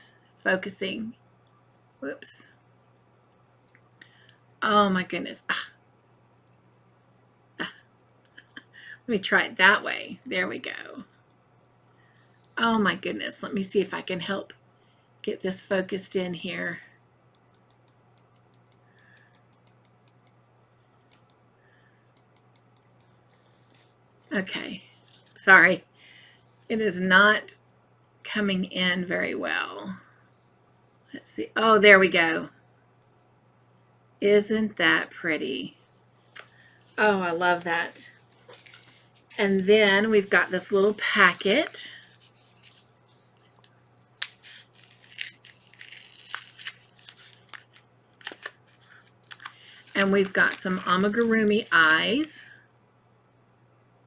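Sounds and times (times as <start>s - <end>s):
plastic packet crinkling: 40.1s - 52.3s.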